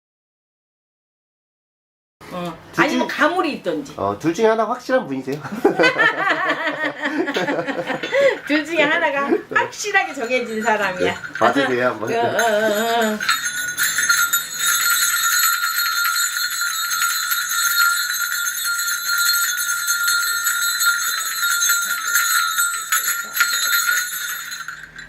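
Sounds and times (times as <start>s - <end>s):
brass bells jingling: 5.6s - 25.0s
person speaking: 8.1s - 14.0s.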